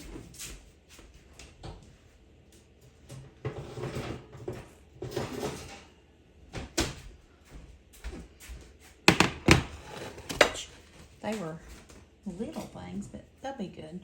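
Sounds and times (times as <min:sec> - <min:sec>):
pan scraping and rustling: 0:03.1 - 0:05.9, 0:09.1 - 0:11.0.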